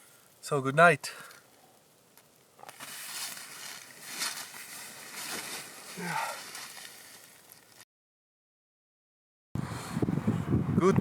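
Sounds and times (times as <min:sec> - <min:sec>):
rustling: 0:01.4 - 0:07.8
gusty wind: 0:09.6 - 0:11.0.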